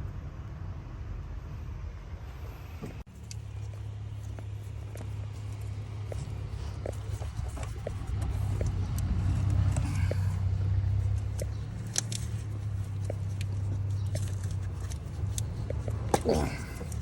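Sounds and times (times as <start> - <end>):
low mechanical hum: 0.0 - 17.0
light clicks and metal taps: 3.2 - 16.2.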